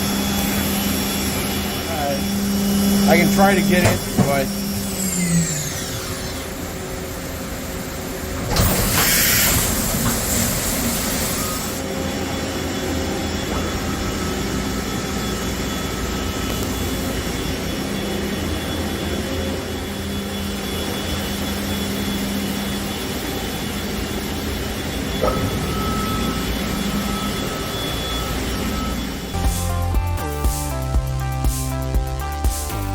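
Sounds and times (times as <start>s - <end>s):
machine mechanical hum: 0.0s - 30.3s
thin high whine: 0.0s - 32.9s
loud hissing burst: 1.0s - 11.8s.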